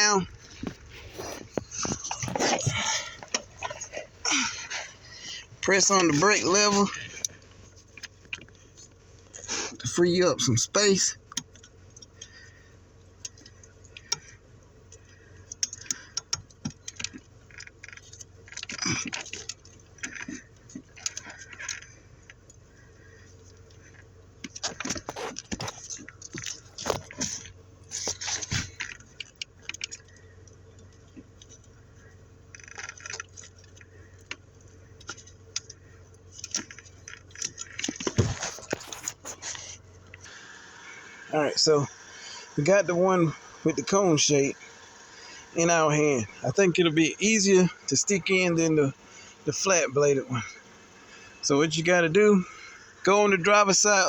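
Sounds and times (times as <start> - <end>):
car engine idling hum: 0.0 - 54.0
small parts clinking and scraping: 32.5 - 40.3.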